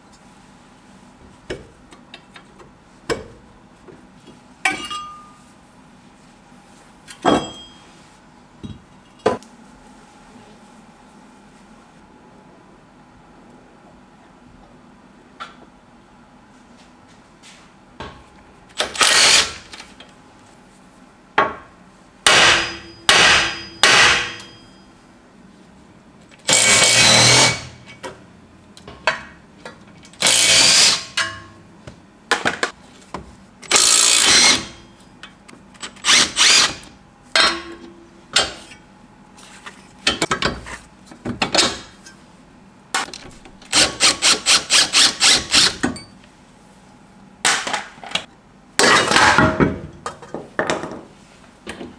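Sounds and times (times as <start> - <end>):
power tool bursts: 18.8 - 19.7, 22.3 - 24.6, 26.5 - 27.8, 30.2 - 31.2, 33.7 - 34.8, 35.8 - 36.8, 43.7 - 45.8
rapid strikes on metal: 22.3 - 24.6.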